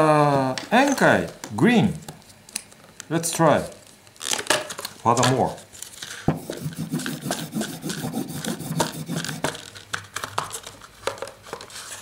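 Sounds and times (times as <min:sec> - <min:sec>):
leather strop rubbing strokes: 0:06.3 - 0:09.6.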